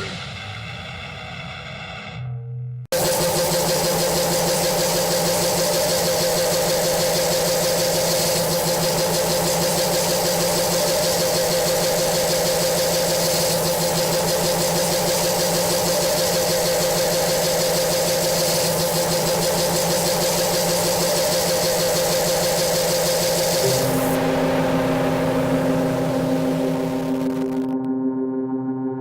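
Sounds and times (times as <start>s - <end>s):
harsh distorted noise music: 0.0s - 27.9s.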